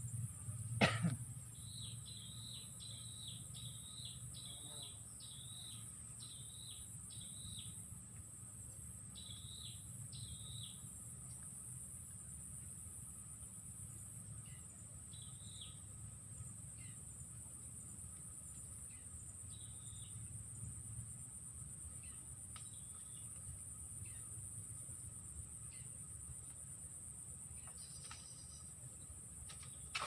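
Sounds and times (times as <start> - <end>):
low background rumble: 0.0 - 4.2
high-pitched insect chorus: 0.0 - 30.0
bird chirping: 1.5 - 7.8, 9.1 - 10.9.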